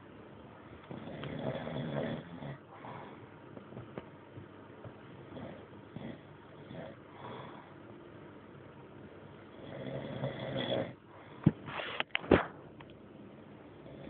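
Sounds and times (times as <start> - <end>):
man snoring: 0.9 - 3.1, 9.6 - 11.0
sharp clicks or knocks: 11.5 - 12.9.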